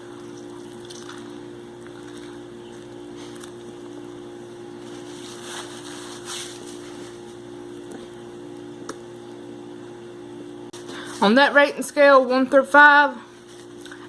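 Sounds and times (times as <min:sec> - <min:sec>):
steady mechanical hum: 0:00.0 - 0:14.0
person chewing food: 0:00.1 - 0:04.2.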